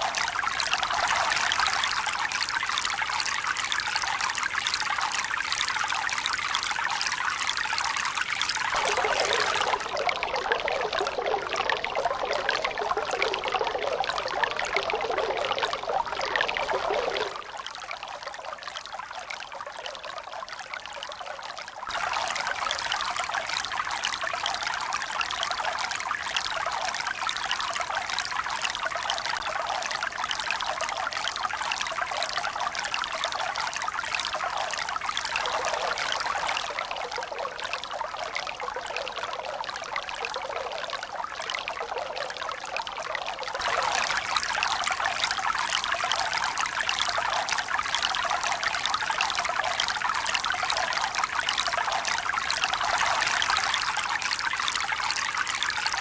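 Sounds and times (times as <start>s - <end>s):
rush of running water: 0.0s - 10.2s, 21.9s - 26.7s, 43.6s - 56.0s.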